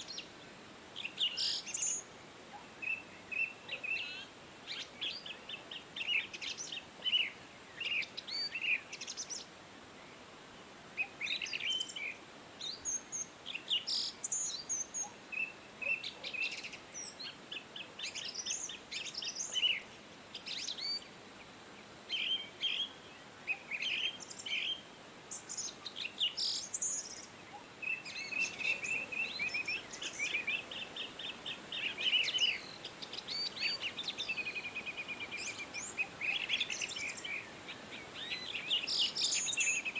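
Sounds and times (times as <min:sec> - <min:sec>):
small birds chirping: 0:21.8 - 0:39.9.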